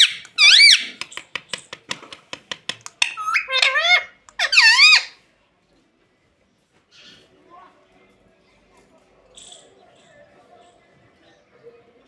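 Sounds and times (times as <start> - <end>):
parakeet shrill call: 0.0 - 0.9, 3.2 - 5.2
parakeet squawky chatter: 0.0 - 1.0, 3.1 - 5.2.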